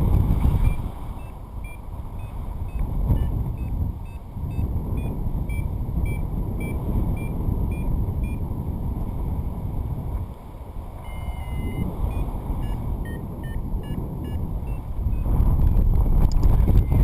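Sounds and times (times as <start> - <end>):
wind rushing over microphone: 0.0 - 17.0
variometer beeping: 0.6 - 8.4, 11.0 - 15.4, 16.7 - 17.0.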